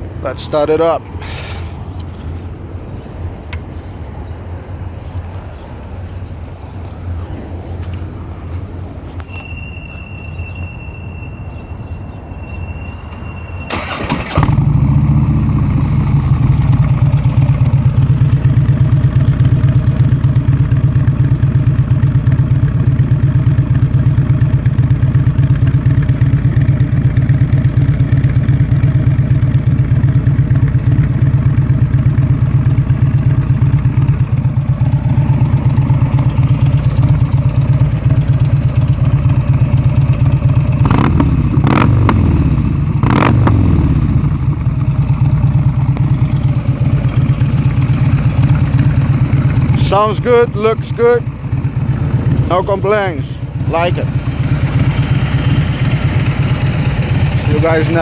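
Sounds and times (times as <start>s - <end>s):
motorcycle starter cranking: 13.7s - 17.7s, 33.0s - 47.9s
motorcycle engine idling: 13.7s - 58.0s.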